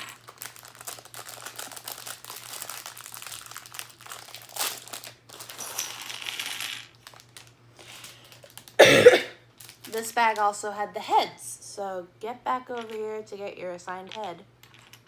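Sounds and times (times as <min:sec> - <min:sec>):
plastic bag crinkling: 0:00.0 - 0:08.8, 0:09.6 - 0:10.4
plastic toy bricks clattering: 0:14.0 - 0:15.0.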